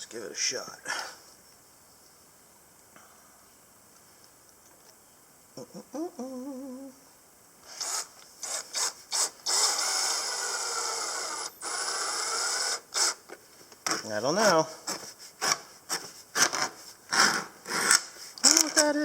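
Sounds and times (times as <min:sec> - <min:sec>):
person humming: 0:05.6 - 0:07.1, 0:18.4 - 0:19.0
shaft scraping on shield: 0:13.9 - 0:18.8.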